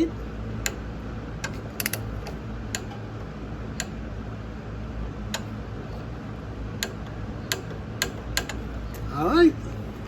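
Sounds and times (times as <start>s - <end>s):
steady low hum: 0.0s - 10.0s
torque wrench clicking: 0.6s - 3.1s, 3.7s - 4.0s, 6.8s - 9.1s.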